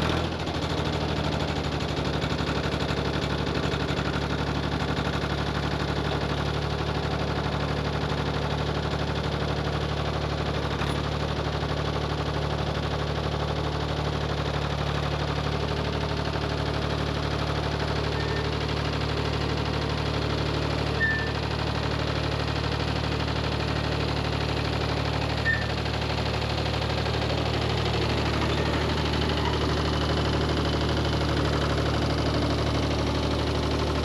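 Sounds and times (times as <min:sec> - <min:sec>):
tractor engine running: 0:00.0 - 0:34.0.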